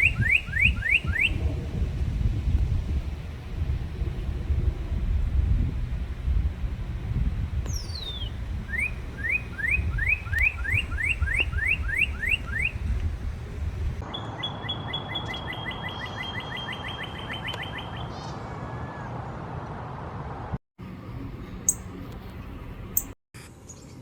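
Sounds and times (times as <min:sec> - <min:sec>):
fast bird trill: 0:00.0 - 0:01.4, 0:07.7 - 0:13.0, 0:21.7 - 0:22.0
cardinal whistling song: 0:00.0 - 0:01.5, 0:07.6 - 0:18.1
low rumble: 0:01.3 - 0:14.0, 0:20.8 - 0:23.2.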